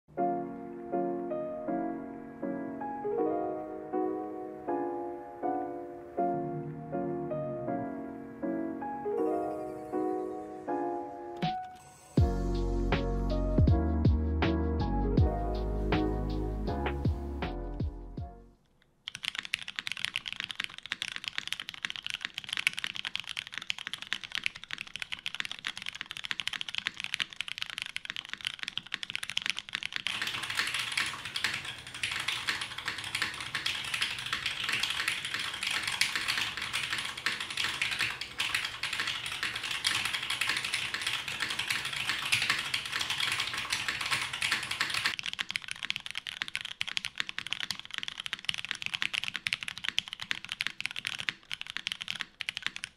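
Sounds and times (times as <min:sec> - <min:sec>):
fast typing on mechanical keyboard: 0:19.0 - 0:52.9.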